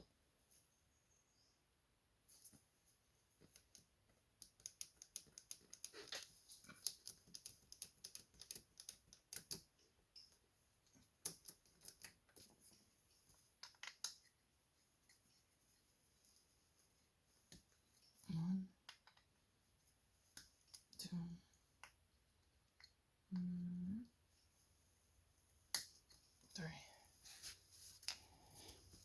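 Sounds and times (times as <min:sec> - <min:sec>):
small parts clicking and tapping: 0:03.4 - 0:12.5, 0:13.6 - 0:14.4.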